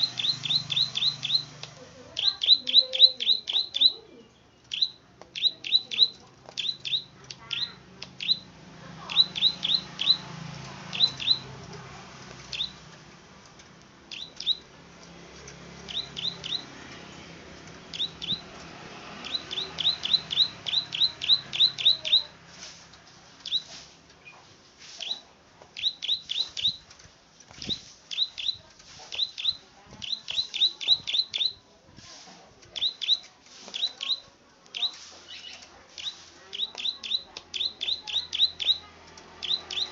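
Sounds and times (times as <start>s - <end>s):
bird sharp clicking call: 25.8s - 26.8s.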